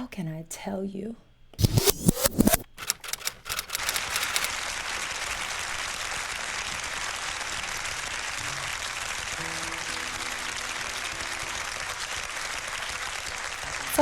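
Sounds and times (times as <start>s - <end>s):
audience applause: 3.5s - 14.0s.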